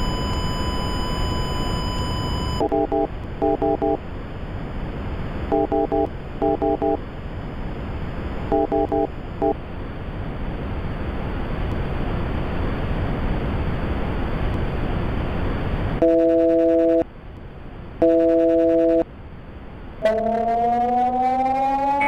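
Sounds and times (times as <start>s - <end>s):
telephone line static hiss: 0.0s - 11.1s, 18.0s - 19.1s
siren rising in pitch: 20.0s - 22.0s.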